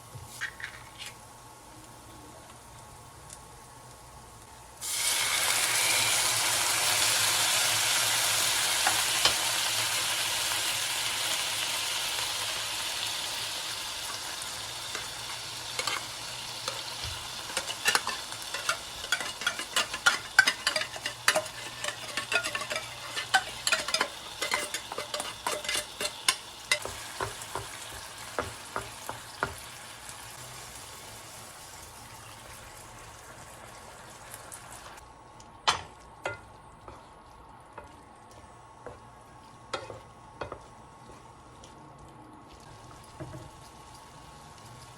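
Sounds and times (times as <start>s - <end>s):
food sizzling in a pan: 0.0s - 35.0s, 35.6s - 41.7s, 42.4s - 44.9s
utensil scraping a pan: 15.8s - 27.1s.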